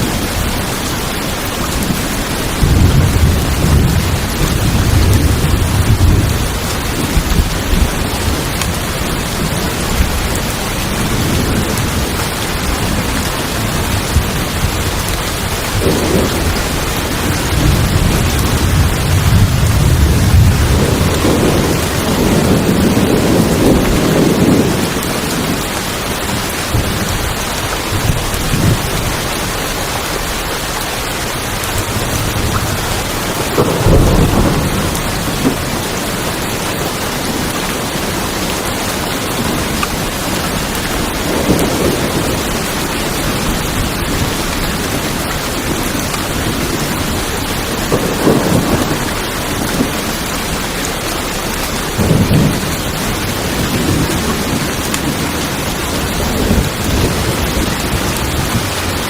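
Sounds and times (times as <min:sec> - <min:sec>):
heavy rain on tin roof: 0:00.0 - 0:59.0
thunder rumbling: 0:00.0 - 0:59.0.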